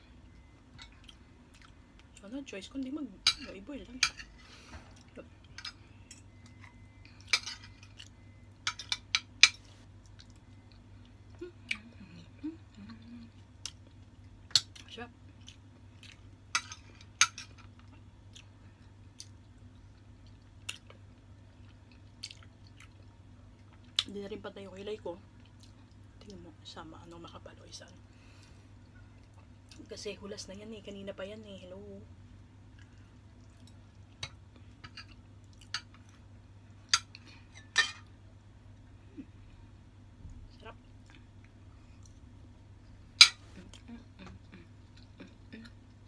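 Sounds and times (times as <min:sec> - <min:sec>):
low hum: 0:00.0 - 0:22.1
person chewing food: 0:00.2 - 0:02.2, 0:04.5 - 0:11.9, 0:12.5 - 0:24.1, 0:32.7 - 0:36.3, 0:43.2 - 0:46.0
utensils clinking against a plate: 0:36.9 - 0:38.0.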